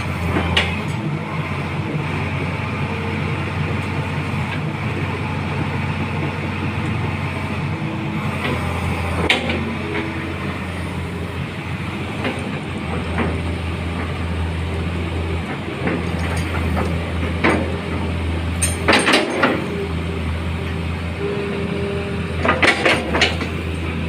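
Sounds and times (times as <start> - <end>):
excavator diesel engine running: 0.0 - 24.0
metal clanks: 15.8 - 19.8.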